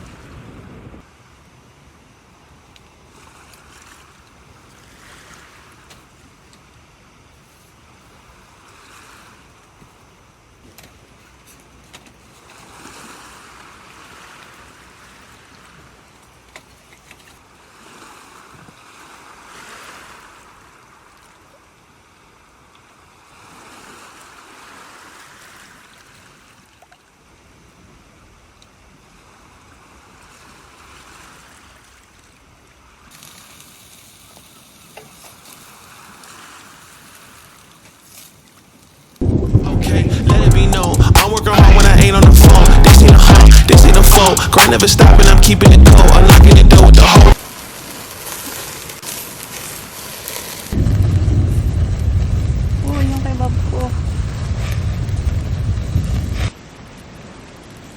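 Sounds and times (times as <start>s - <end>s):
gusting wind: 0.0s - 2.4s, 39.2s - 46.0s, 50.6s - 57.9s
rain: 0.0s - 41.2s, 47.3s - 57.9s
sharp ticks: 39.6s - 47.4s.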